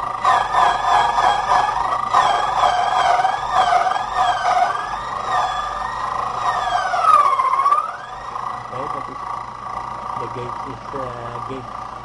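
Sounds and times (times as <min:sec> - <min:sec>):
emergency siren wailing: 0:00.0 - 0:09.0.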